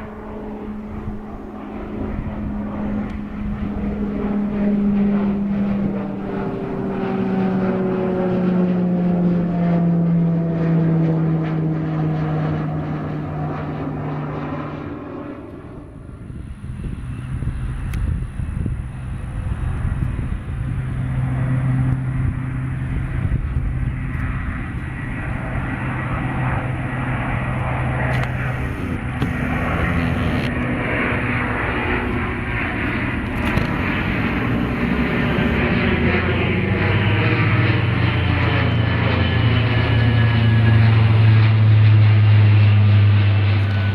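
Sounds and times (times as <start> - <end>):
aircraft engine running: 0.0 - 43.9
propeller airplane passing: 0.0 - 43.9
low rumble: 23.1 - 36.6.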